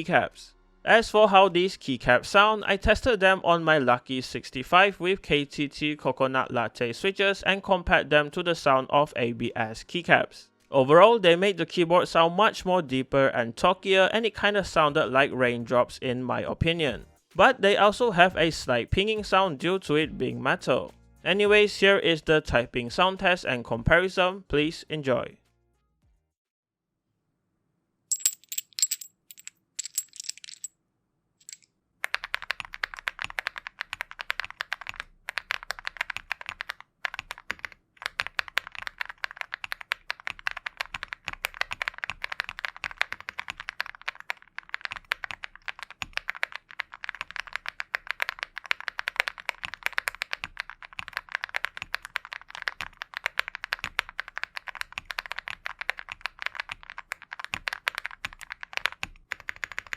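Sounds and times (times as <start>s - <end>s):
mechanical keyboard typing: 32.0s - 59.9s.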